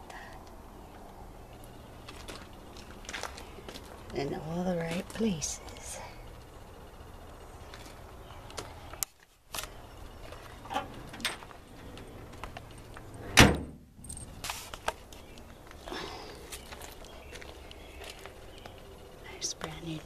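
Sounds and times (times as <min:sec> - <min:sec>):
truck door slamming shut: 0:13.3 - 0:13.9.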